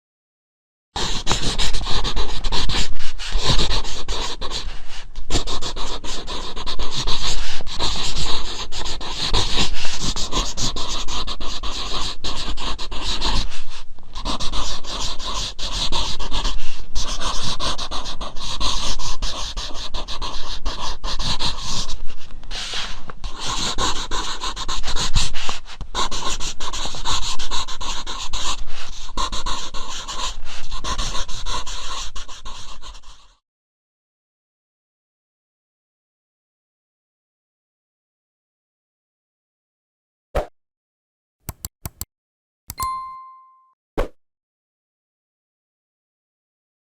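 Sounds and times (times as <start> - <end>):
pencil scratching on paper: 1.0 - 13.5, 14.2 - 22.1, 22.8 - 33.4.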